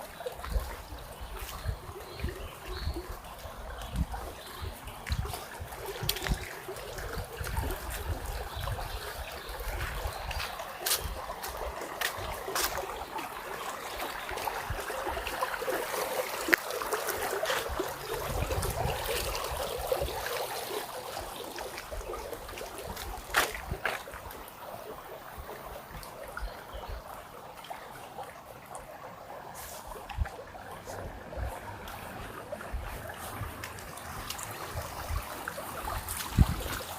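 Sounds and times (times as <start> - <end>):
stream trickling over rocks: 0.0 - 36.9.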